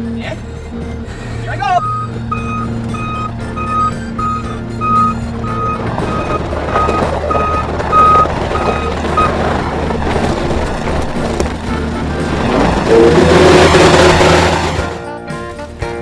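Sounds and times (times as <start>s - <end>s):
machine engine running: 0.4s - 15.7s
reversing alarm beeping: 1.6s - 9.7s.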